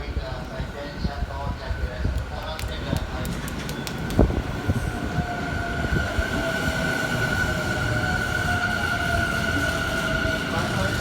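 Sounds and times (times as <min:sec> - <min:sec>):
electric train rumbling: 0:00.0 - 0:11.0
high-pitched train whine: 0:04.3 - 0:11.0.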